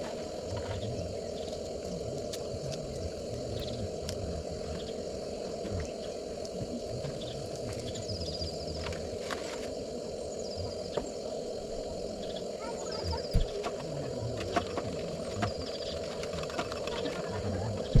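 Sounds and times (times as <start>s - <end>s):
water heating to boil: 0.0s - 18.0s
faint clicks: 1.6s - 4.8s.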